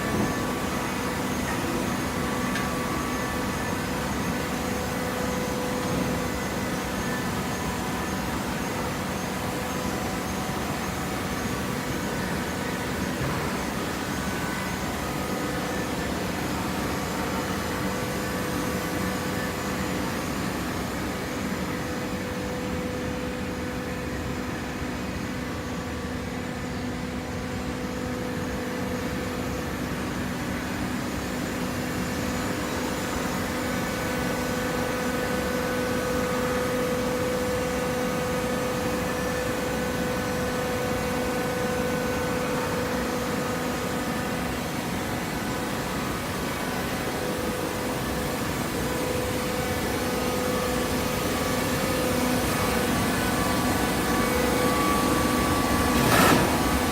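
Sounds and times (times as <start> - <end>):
baling machine droning: 31.9 - 56.9.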